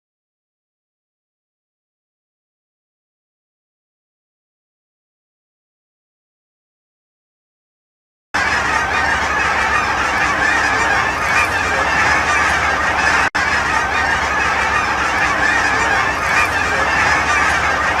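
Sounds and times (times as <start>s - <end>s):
flock of geese honking: 8.4s - 18.0s.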